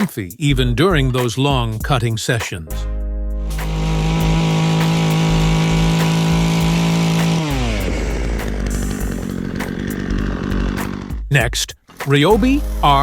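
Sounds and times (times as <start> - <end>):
chainsaw engine at full throttle: 3.5 - 11.3.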